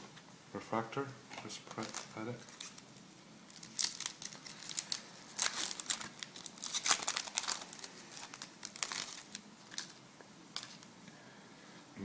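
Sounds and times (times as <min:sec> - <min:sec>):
foil wrapper crinkling: 0:01.7 - 0:10.0.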